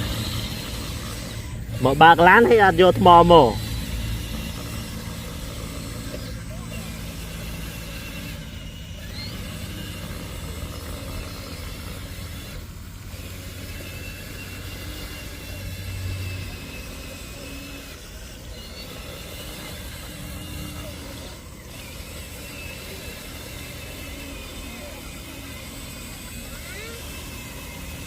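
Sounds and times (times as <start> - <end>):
vehicle engine rumbling: 0.0 - 17.3.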